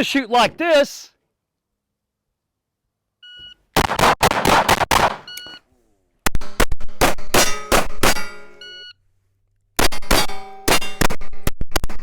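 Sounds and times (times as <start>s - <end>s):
pistol shots: 3.8s - 5.3s
shot timer beep: 8.6s - 8.9s.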